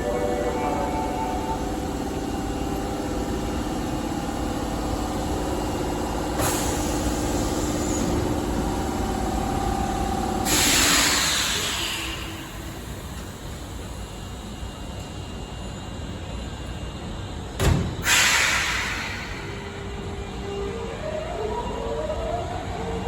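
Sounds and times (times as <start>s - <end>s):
compressed-air hiss: 10.5s - 12.1s
blast of air: 18.0s - 19.6s.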